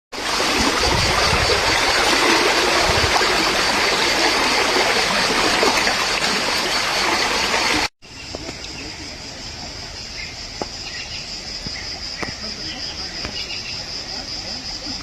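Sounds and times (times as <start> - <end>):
flowing water rushing: 0.1 - 7.9.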